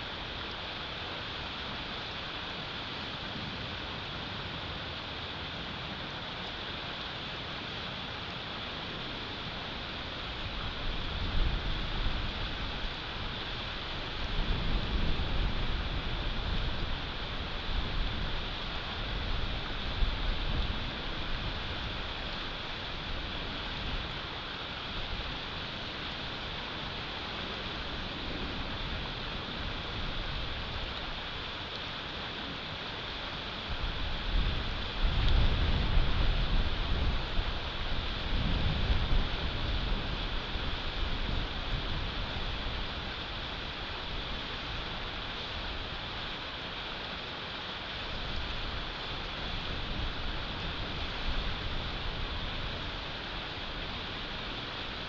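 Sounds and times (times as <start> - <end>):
wind hissing in snowstorm: 0.0 - 55.0
wind buffeting microphone: 10.3 - 24.1, 33.6 - 44.4.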